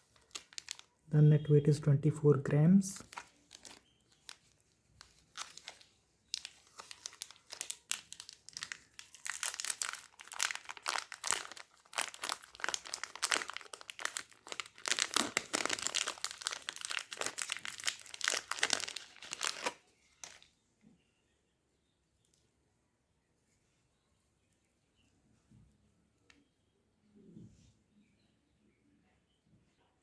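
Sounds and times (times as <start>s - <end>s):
wrapper crinkling and tearing: 0.0s - 1.0s, 3.0s - 20.5s.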